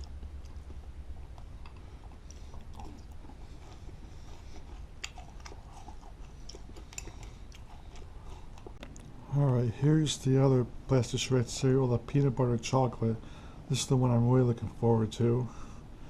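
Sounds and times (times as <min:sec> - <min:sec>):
person chewing crunchy cereal: 0:00.0 - 0:09.2
steady low hum: 0:00.0 - 0:16.0.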